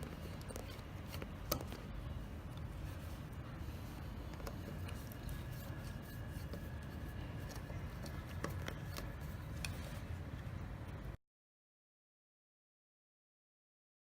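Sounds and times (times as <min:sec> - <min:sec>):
low room rumble: 0:00.0 - 0:11.2.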